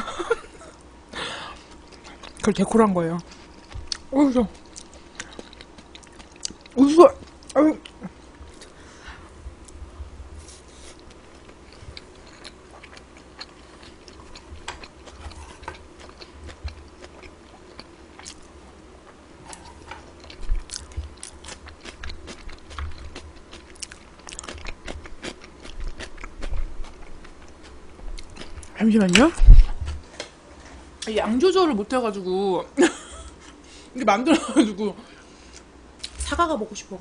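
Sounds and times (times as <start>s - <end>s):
chewing and biting food: 1.6s - 2.5s, 3.2s - 8.8s, 10.7s - 18.6s, 19.5s - 28.8s
food crunching: 3.2s - 8.8s, 10.6s - 29.7s.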